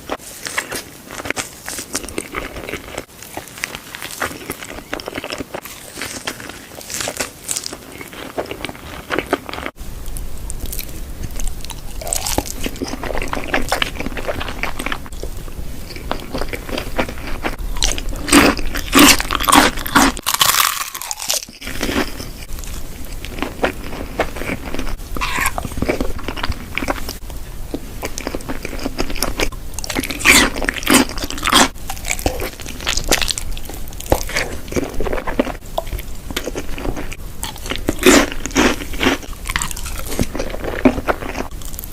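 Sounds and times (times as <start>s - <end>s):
chewing: 0.0s - 41.9s
crunchy food bites: 0.1s - 41.9s.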